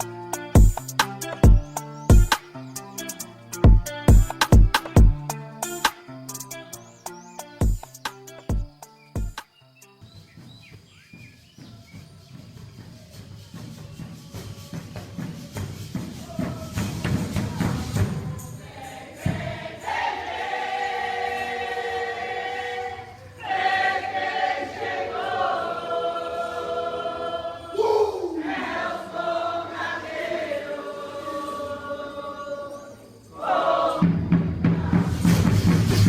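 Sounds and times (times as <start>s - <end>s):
choir singing long held notes: 13.1s - 36.0s.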